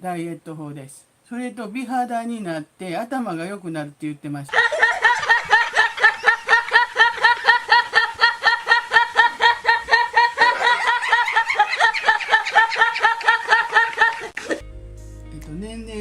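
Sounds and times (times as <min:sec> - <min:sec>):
looped snickering laugh: 0:04.5 - 0:14.6.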